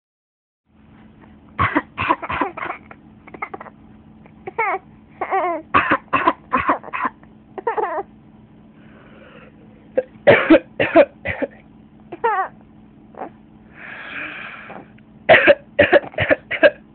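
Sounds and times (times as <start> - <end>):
person coughing: 1.6 - 3.7, 5.8 - 8.0, 10.0 - 11.6, 15.3 - 16.8.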